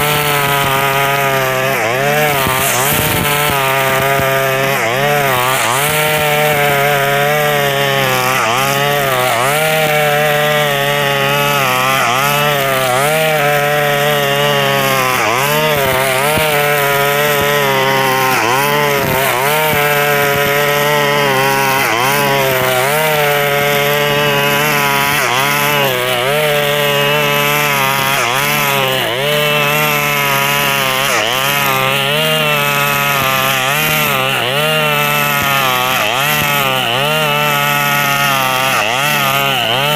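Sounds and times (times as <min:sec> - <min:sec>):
brush cutter engine revving: 0:00.0 - 0:39.9.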